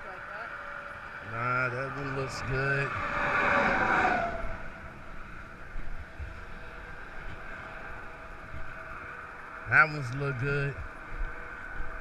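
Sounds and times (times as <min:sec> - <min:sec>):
distant traffic hum: 0:00.0 - 0:12.0
vehicle passing close by: 0:00.5 - 0:09.1.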